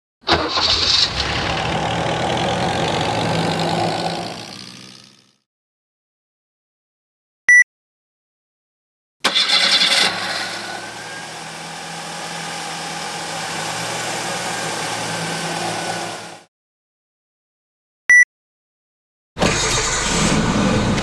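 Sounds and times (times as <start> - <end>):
car starter cranking: 0.3 - 1.8, 9.2 - 10.6, 19.4 - 20.5.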